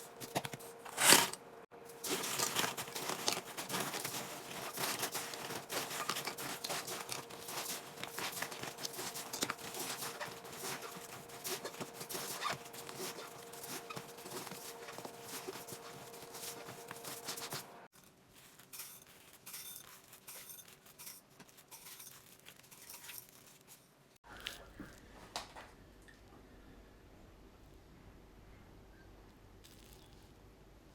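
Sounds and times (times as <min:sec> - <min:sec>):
rapid crinkling clicks: 0:02.0 - 0:17.7
faint steady hum: 0:24.3 - 0:30.9.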